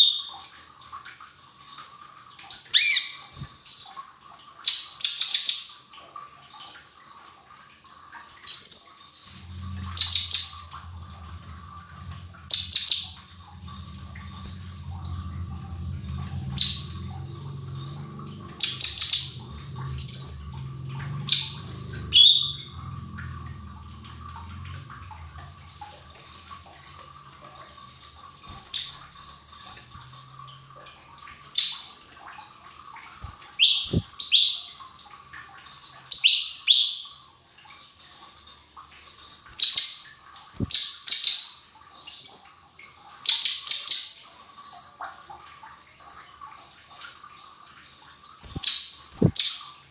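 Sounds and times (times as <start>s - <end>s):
low hum: 9.2s - 31.8s
bird chirping: 9.9s - 10.8s, 12.5s - 13.3s, 33.6s - 34.7s.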